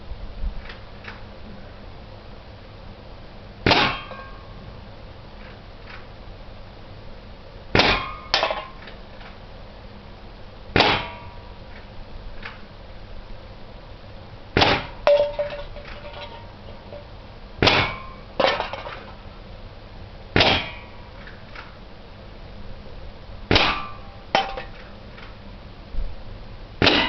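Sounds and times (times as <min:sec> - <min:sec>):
air rifle shots: 0:10.8 - 0:11.2
pellet clanging on can: 0:15.0 - 0:17.1.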